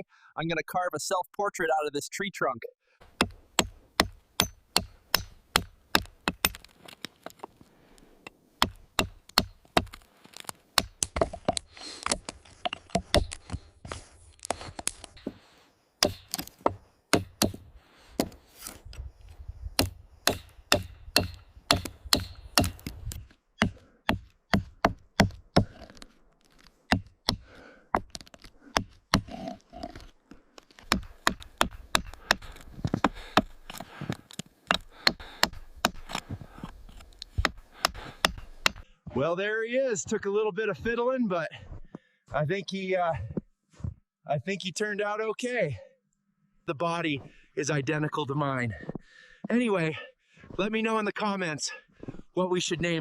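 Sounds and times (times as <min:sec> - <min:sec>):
carving tools chopping wood: 0:03.0 - 0:07.5, 0:08.6 - 0:13.7, 0:16.0 - 0:18.8, 0:19.8 - 0:38.9.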